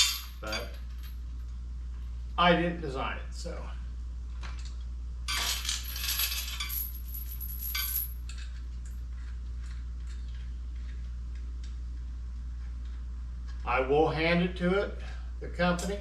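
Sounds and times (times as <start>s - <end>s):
metal parts clinking and rattling: 0.0s - 1.1s, 5.3s - 8.6s.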